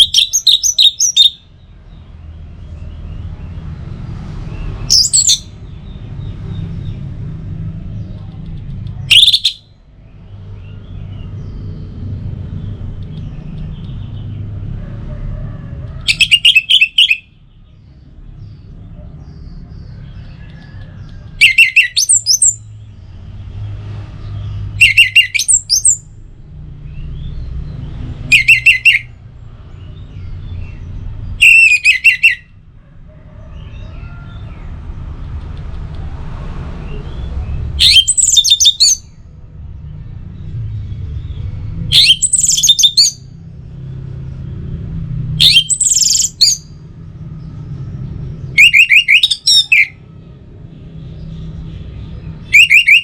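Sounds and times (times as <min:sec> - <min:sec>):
thrush singing: 0:00.0 - 0:01.4, 0:04.8 - 0:05.6, 0:09.0 - 0:09.6, 0:37.8 - 0:39.1, 0:41.9 - 0:43.3, 0:45.4 - 0:46.7.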